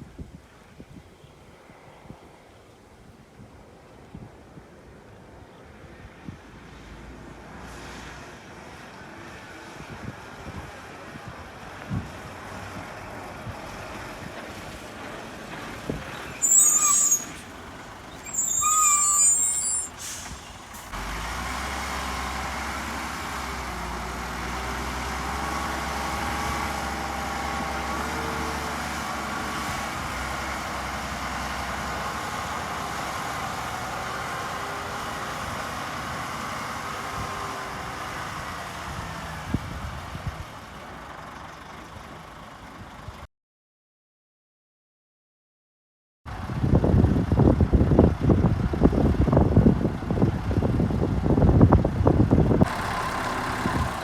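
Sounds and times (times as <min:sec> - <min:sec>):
heavy diesel engine running: 0:10.4 - 0:38.4, 0:39.6 - 0:43.2, 0:46.3 - 0:54.0
air brakes hissing: 0:16.2 - 0:21.0.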